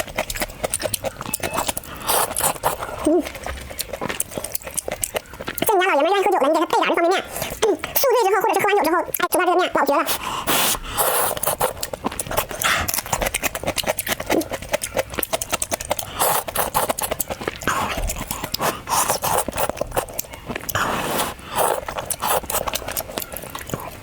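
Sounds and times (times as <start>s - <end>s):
chewing and mouth smacking: 0.0s - 24.0s
slurping noodles: 0.8s - 4.7s, 9.8s - 24.0s.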